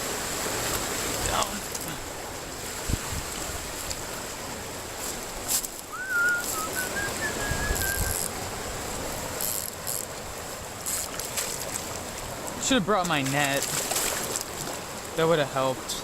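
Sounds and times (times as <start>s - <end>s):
background hiss: 0.0s - 16.0s
bird whistled call: 5.9s - 8.2s.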